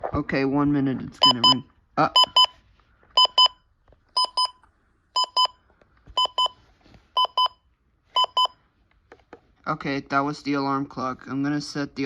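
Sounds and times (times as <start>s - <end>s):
alarm clock double beep: 4.2s - 4.6s, 8.2s - 8.6s.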